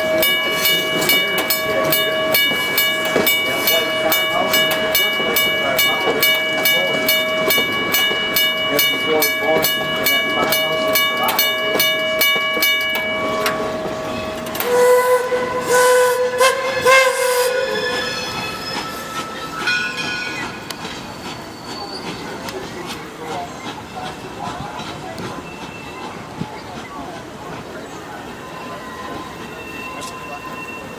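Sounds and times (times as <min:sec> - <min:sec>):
locomotive bell ringing: 0:00.0 - 0:30.9
steam whistle blast: 0:14.6 - 0:18.4.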